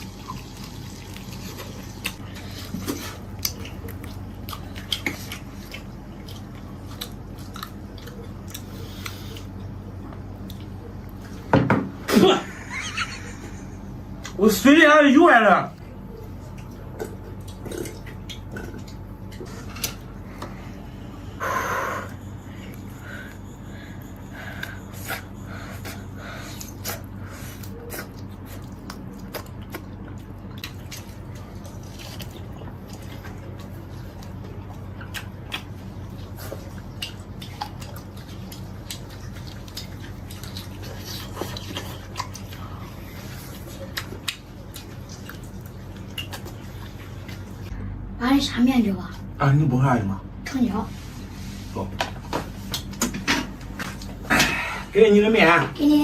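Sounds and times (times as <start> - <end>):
wet chewing sounds: 0.0 - 11.5, 15.8 - 20.8, 22.1 - 47.8, 52.2 - 54.6
steady low hum: 0.0 - 56.0.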